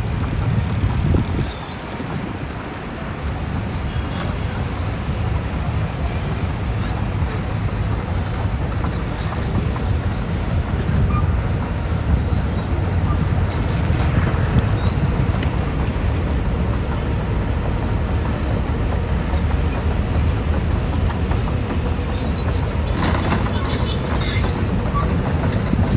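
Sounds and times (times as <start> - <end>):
diesel engine rumbling: 0.0 - 25.9.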